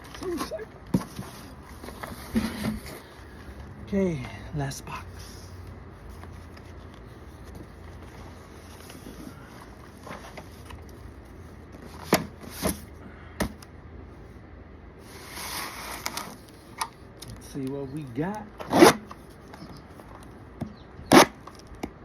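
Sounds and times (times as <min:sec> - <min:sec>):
cardboard rustling: 0:00.0 - 0:04.3, 0:05.6 - 0:12.9.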